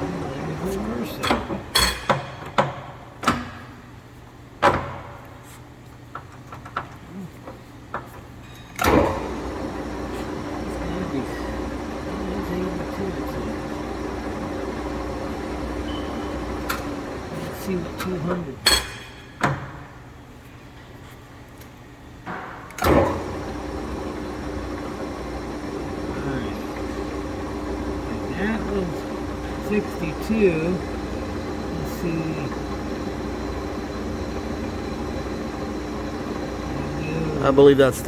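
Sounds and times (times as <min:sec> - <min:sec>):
low machine hum: 0:00.0 - 0:04.4, 0:08.8 - 0:20.8, 0:22.2 - 0:38.0
lathe spindle engaging clunk: 0:08.8 - 0:10.8, 0:11.5 - 0:19.8, 0:22.3 - 0:36.7
lathe control clicks: 0:13.4 - 0:18.8.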